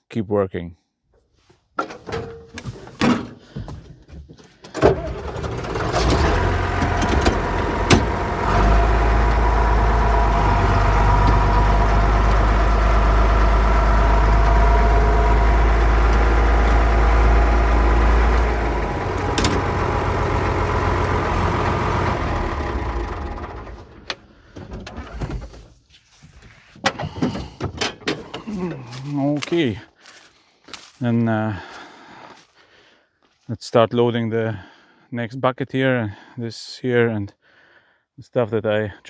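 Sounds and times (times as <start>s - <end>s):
diesel tractor engine running: 2.1s - 25.7s.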